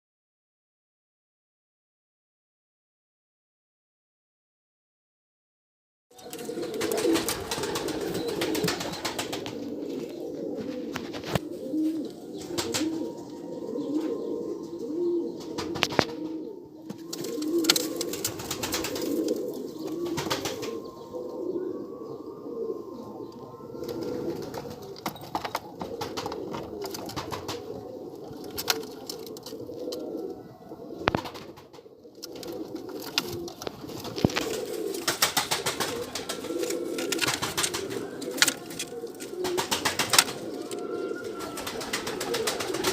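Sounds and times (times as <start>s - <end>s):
wings fluttering: 6.2s - 13.3s, 15.4s - 21.0s, 23.8s - 30.0s, 31.0s - 42.9s
pigeons cooing: 6.2s - 42.9s.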